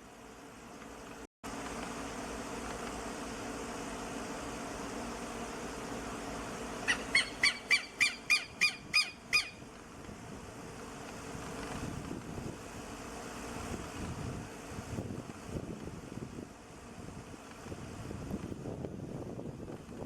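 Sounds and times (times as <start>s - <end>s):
lapwing calling: 6.8s - 9.7s
low wind rumble on microphone: 8.4s - 20.0s.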